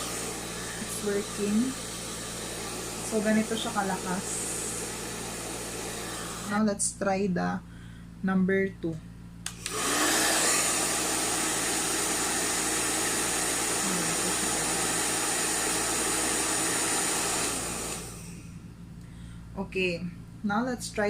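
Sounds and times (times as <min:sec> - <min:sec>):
blow dryer running: 0:00.0 - 0:06.7, 0:09.4 - 0:18.6.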